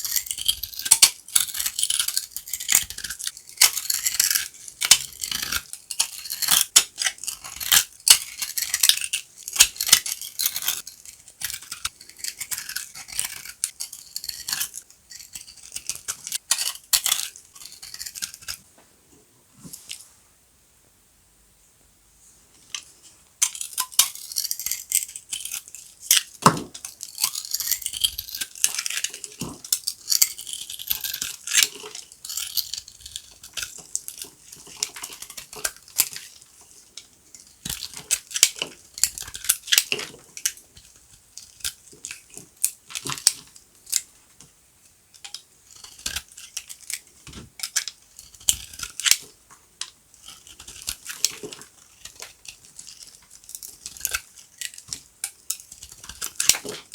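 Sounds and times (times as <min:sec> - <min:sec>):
knife cutting brittle soap: 0:00.0 - 0:18.7, 0:22.8 - 0:44.1, 0:45.1 - 0:56.9.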